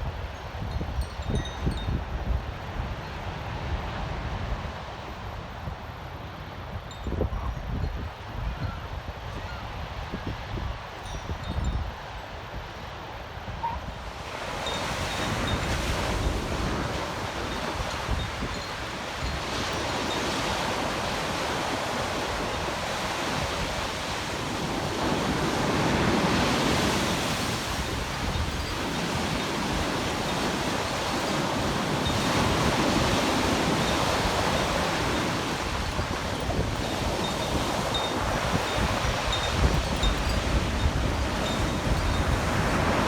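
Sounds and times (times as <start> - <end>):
wind rumbling on microphone: 0.0 - 43.0
ocean surf washing onto beach: 13.9 - 43.0.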